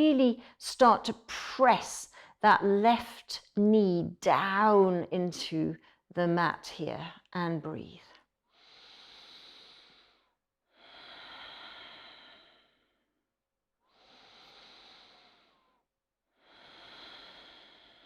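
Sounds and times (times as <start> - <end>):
person breathing slowly and deeply: 8.5 - 13.1, 13.9 - 18.0.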